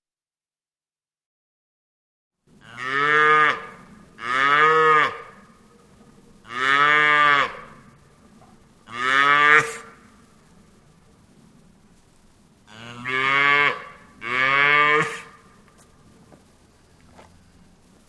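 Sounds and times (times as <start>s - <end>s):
cow mooing: 2.6s - 5.5s, 6.5s - 7.9s, 8.9s - 10.1s, 12.7s - 15.4s.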